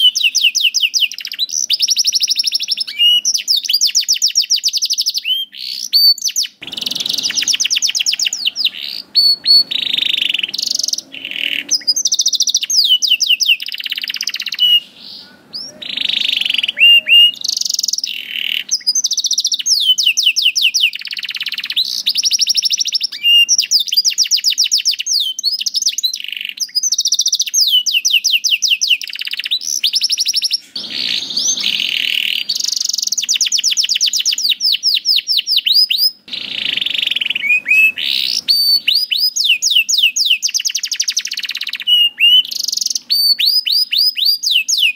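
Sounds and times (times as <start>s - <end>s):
canary singing trills: 0.0s - 44.9s.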